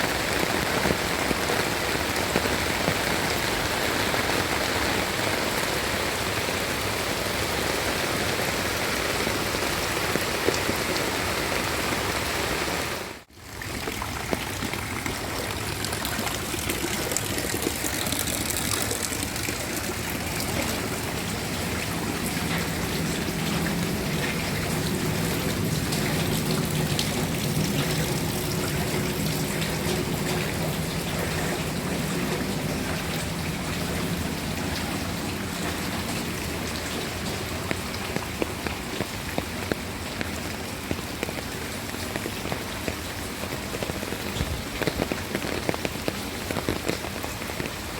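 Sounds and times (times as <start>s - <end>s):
steady rain falling: 0.0s - 47.9s.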